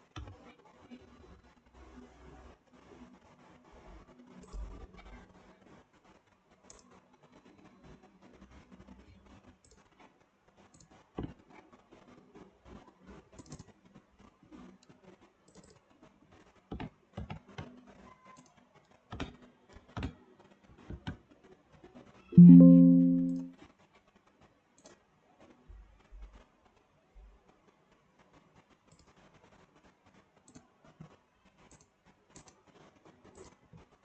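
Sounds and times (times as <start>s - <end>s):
keyboard and mouse clicks: 13.4s - 13.7s, 15.5s - 15.8s, 31.7s - 32.6s
faint low hum: 22.3s - 23.6s.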